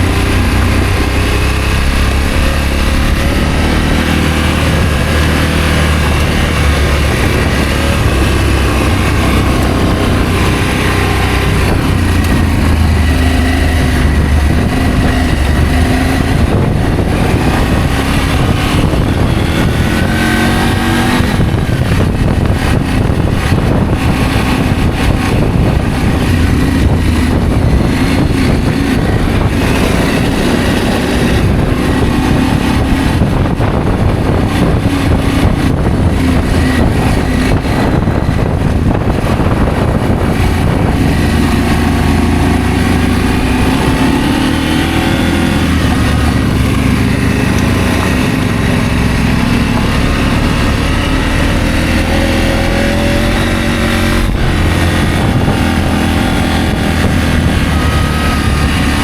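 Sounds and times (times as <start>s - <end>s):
motorcycle engine revving: 0.0s - 59.0s
wind rumble on microphone: 0.0s - 59.0s.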